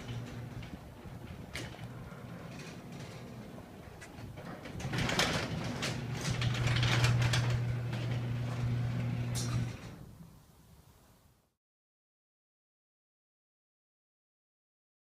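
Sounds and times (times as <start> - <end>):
door rattling along track: 0.0 - 10.0
garage door opener motor hum: 0.0 - 10.1.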